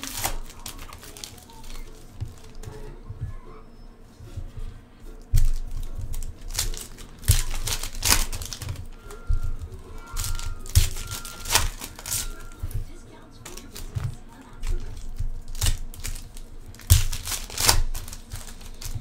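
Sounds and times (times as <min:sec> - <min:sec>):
card pack wrappers tearing: 0:00.0 - 0:02.8, 0:05.2 - 0:19.0.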